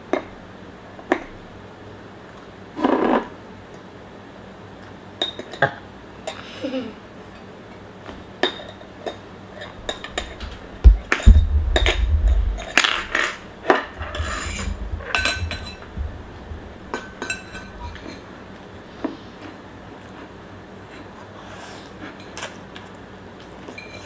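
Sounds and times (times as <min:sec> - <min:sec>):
utensils clinking against a bowl: 0:05.2 - 0:06.4, 0:08.3 - 0:12.1, 0:12.7 - 0:18.3, 0:21.8 - 0:24.0
heavy low thump: 0:09.8 - 0:18.1.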